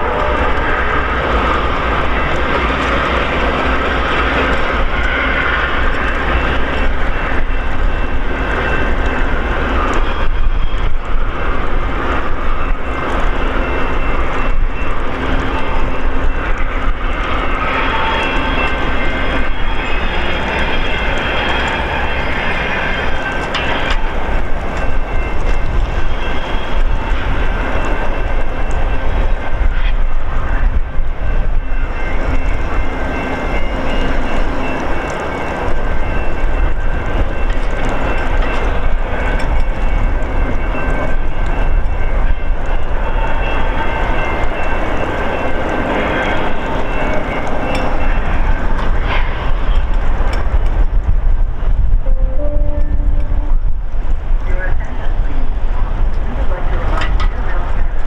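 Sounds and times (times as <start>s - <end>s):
train rumble: 0.0s - 58.0s
faint high steady tones: 52.0s - 54.0s.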